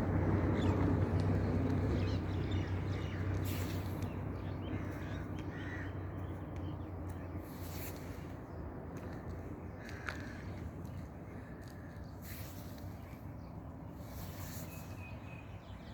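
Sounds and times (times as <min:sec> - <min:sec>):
harsh caw-like animal calls: 0:04.6 - 0:06.2, 0:09.8 - 0:12.1.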